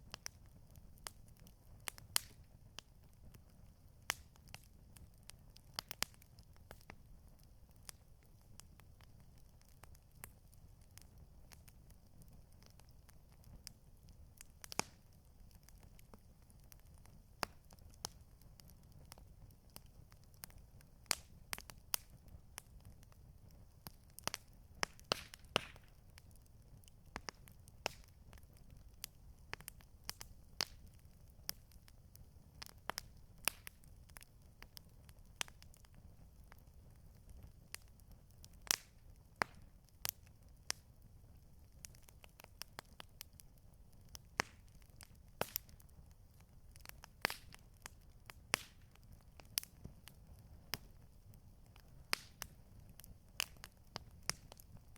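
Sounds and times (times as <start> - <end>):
campfire crackling and popping: 0.0 - 54.9.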